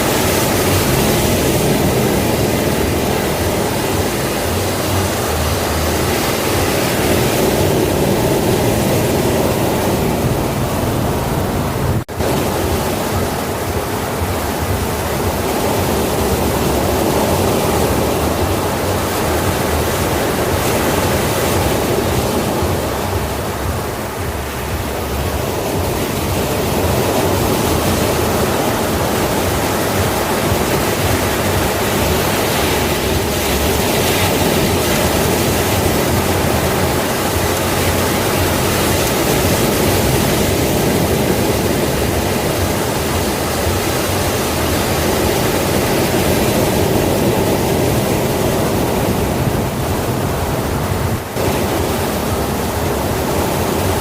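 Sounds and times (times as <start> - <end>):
waves breaking and washing: 0.0 - 54.0.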